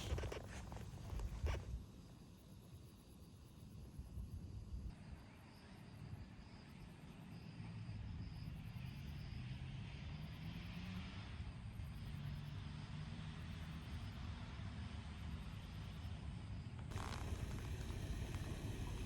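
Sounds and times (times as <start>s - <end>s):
wind and road noise: 0.0s - 1.8s, 16.9s - 19.0s
motorcycle engine accelerating: 16.9s - 19.0s.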